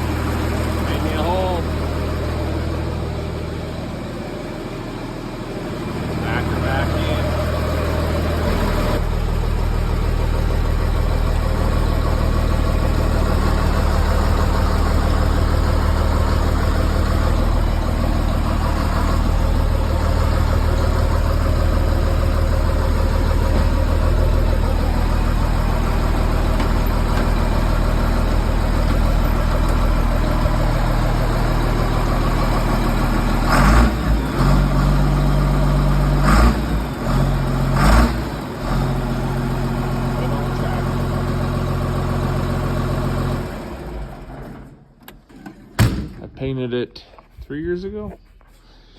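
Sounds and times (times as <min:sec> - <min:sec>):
tractor diesel engine running: 0:00.0 - 0:47.2
sharp engine knocks: 0:23.3 - 0:24.2, 0:26.4 - 0:27.6, 0:45.7 - 0:46.4.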